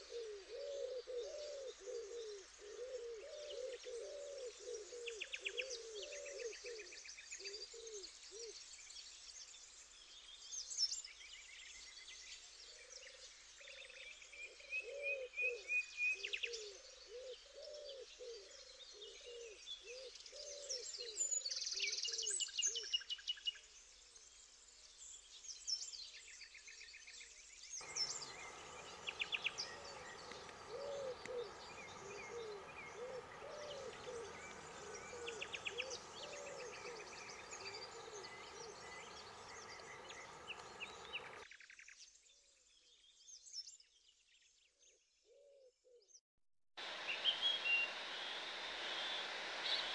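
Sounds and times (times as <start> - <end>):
dove cooing: 0.0 - 6.9, 27.8 - 41.4
river water rushing: 27.8 - 41.4, 46.8 - 49.9
small birds chirping and trilling: 27.8 - 43.5, 46.8 - 49.9.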